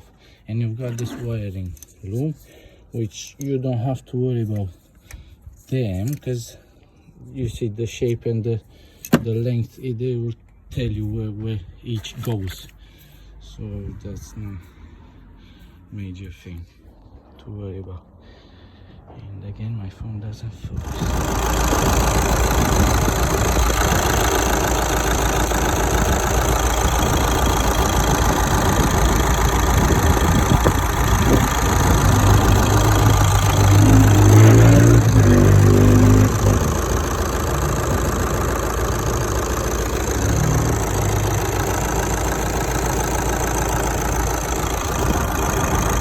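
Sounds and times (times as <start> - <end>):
diesel engine idling: 20.8 - 46.0.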